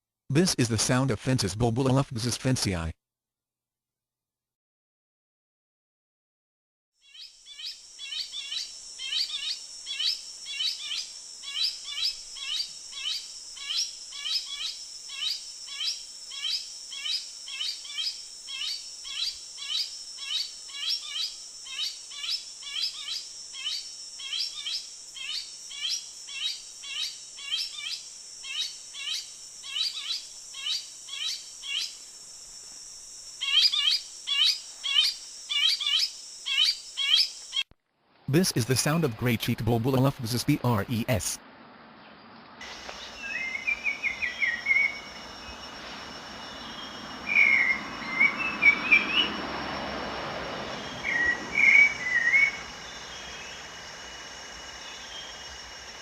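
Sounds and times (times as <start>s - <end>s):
high insect drone: 7.1s - 37.6s, 42.6s - 56.0s.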